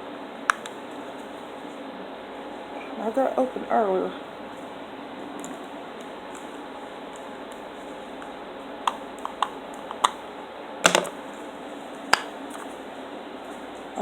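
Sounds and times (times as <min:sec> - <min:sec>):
steady low hiss: 0:00.0 - 0:14.0
makeup compact clicks: 0:08.9 - 0:10.2, 0:10.9 - 0:11.2.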